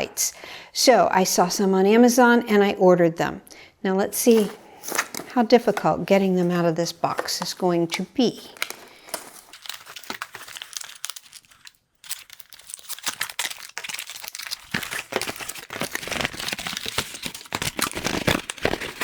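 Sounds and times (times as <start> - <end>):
packaging crinkling and rustling: 4.3 - 19.0.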